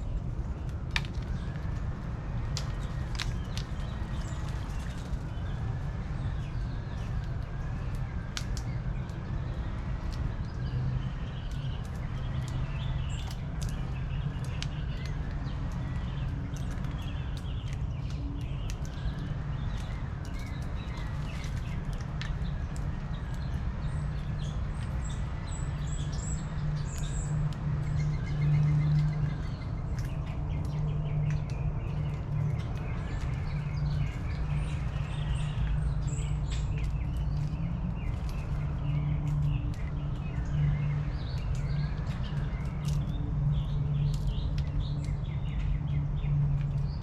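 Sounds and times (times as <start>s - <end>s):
birds chirping and calling: 10.3s - 47.0s.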